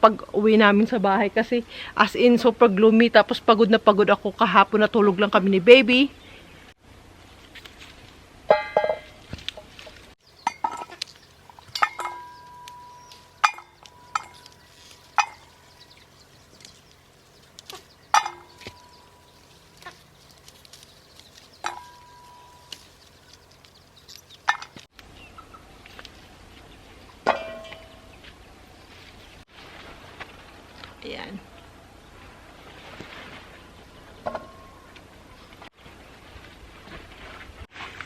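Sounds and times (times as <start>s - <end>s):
chickens clucking: 10.2s - 28.3s.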